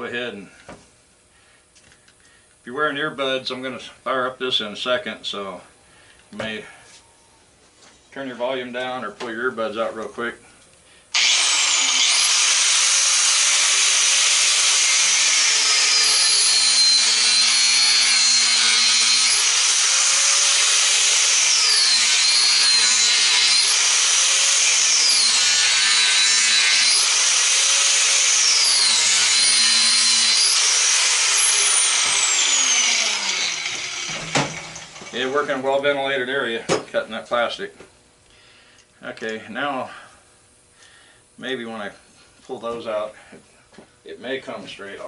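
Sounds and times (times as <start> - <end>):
power tool whining cutting plastic: 11.1 - 35.4.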